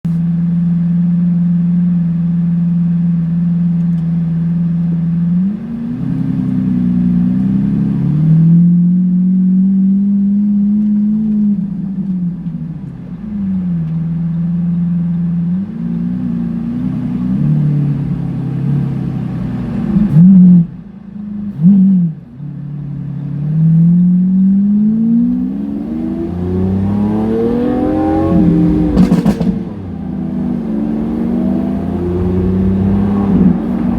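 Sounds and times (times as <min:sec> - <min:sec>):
car engine idling and revving: 0:00.0 - 0:33.9
exhaust crack: 0:26.2 - 0:33.9.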